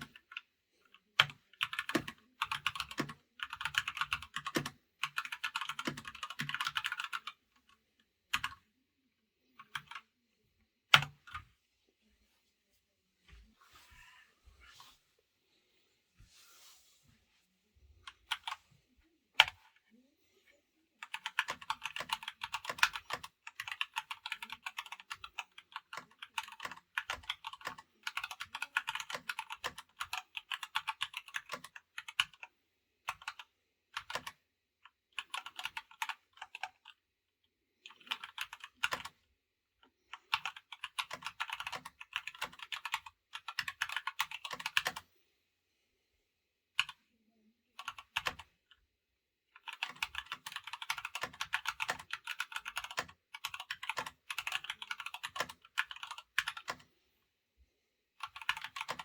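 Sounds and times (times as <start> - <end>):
mechanical keyboard typing: 1.2 - 7.4, 8.3 - 8.6, 9.6 - 10.0, 10.9 - 11.4, 21.0 - 32.5, 33.1 - 34.4, 35.2 - 37.0, 37.9 - 39.2, 40.2 - 45.0, 47.8 - 48.5, 49.6 - 56.9, 58.2 - 59.0.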